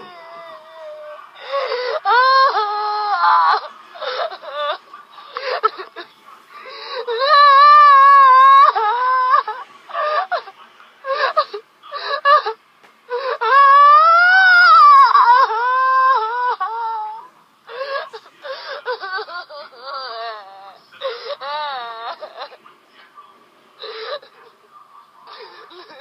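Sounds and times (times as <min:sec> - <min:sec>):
woman crying and wailing: 0:00.0 - 0:06.0.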